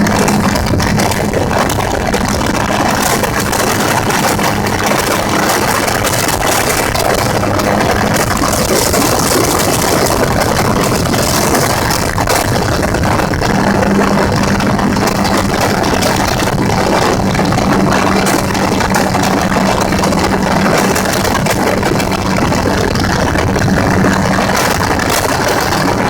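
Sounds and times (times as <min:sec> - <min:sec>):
gyrocopter engine and propeller: 0:00.0 - 0:26.0
loud rush of noise: 0:00.0 - 0:26.0
steady hum: 0:00.0 - 0:26.0.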